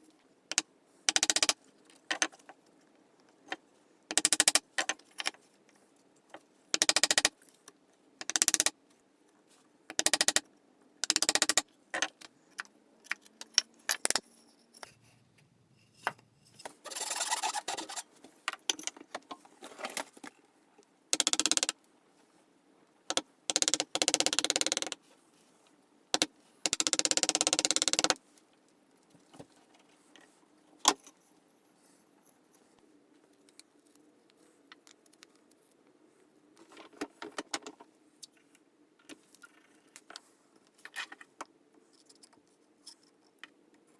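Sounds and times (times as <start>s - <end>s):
sharp clicks: 0.5s - 1.6s, 4.1s - 4.6s, 6.8s - 7.3s, 8.2s - 8.7s, 9.9s - 10.4s, 11.0s - 11.6s, 13.4s - 14.2s, 21.2s - 21.7s, 23.1s - 25.0s
hand tool scraping wood: 16.7s - 18.1s.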